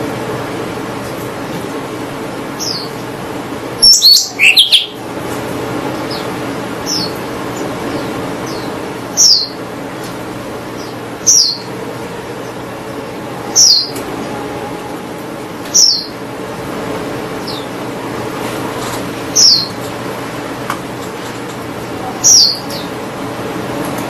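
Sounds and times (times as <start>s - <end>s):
songbird downward-sliding chirp: 3.8s - 5.0s.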